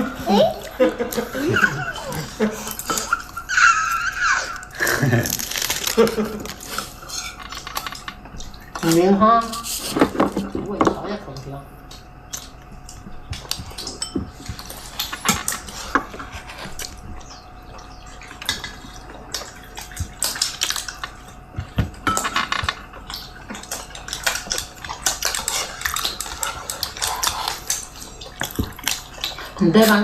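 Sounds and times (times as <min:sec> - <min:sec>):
faint steady hum: 0:00.0 - 0:30.0
dishes and cutlery clinking: 0:06.8 - 0:11.0, 0:13.5 - 0:16.8, 0:21.8 - 0:30.0.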